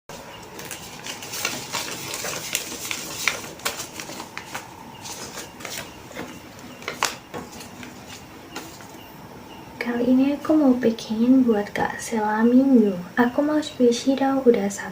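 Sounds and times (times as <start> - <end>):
packaging crinkling: 0.1 - 9.0.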